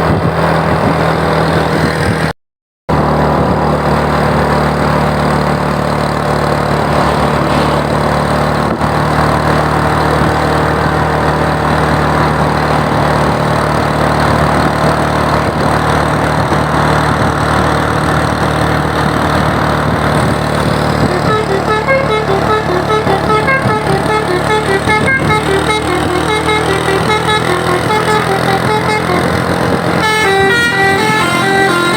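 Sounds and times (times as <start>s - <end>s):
engine hum and road noise: 0.0s - 31.9s
bus horn playing quick tune: 20.9s - 31.9s.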